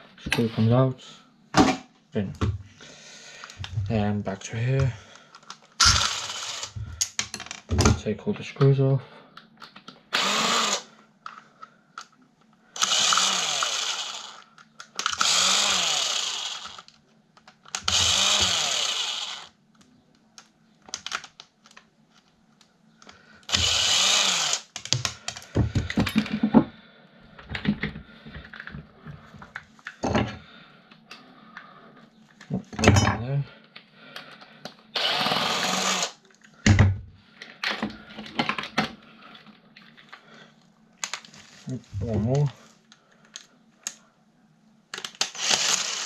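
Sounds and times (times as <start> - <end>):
screws and parts clicking: 5.3 - 7.5, 9.6 - 11.4, 12.8 - 19.5, 23.4 - 26.3, 35.0 - 36.5, 44.9 - 46.0
electric screwdriver whirring: 5.8 - 6.8, 10.1 - 10.9, 12.8 - 16.9, 17.8 - 19.6, 23.5 - 25.0, 35.0 - 36.2, 45.1 - 46.0.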